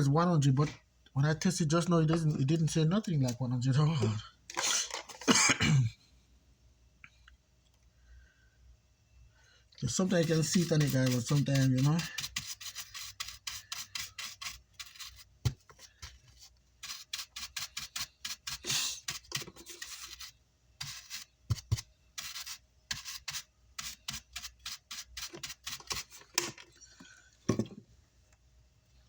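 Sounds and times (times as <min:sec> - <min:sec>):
hand tool scratching circuit board: 0:09.9 - 0:16.2, 0:16.8 - 0:26.4.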